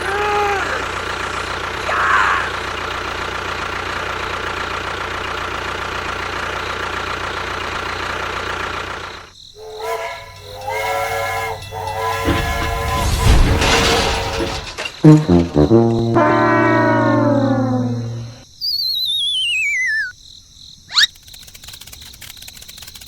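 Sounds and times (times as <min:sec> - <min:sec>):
small engine running: 0:00.0 - 0:14.7.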